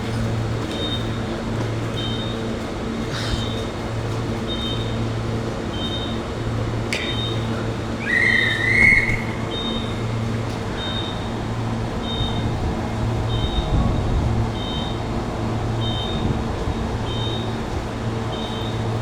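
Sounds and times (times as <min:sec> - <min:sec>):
train low hum: 0:00.0 - 0:19.0
rising whistle-like tone: 0:08.0 - 0:10.1.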